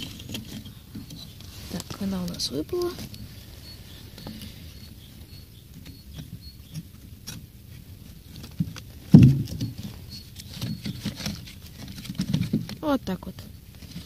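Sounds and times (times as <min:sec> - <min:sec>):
wooden splints clicking and rustling: 0:00.0 - 0:14.0
heavy low thump: 0:09.1 - 0:09.7.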